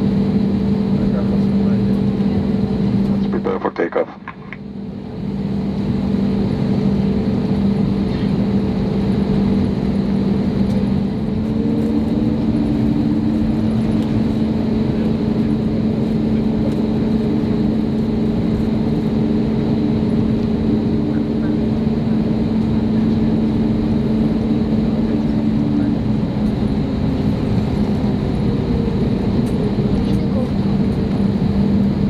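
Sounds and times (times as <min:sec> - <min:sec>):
jet engines heard from cabin: 0:00.0 - 0:32.0.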